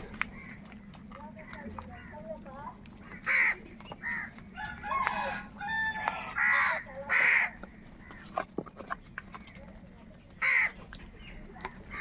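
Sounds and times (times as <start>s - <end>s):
crows cawing: 0.1s - 0.9s, 3.0s - 8.5s, 10.4s - 10.8s.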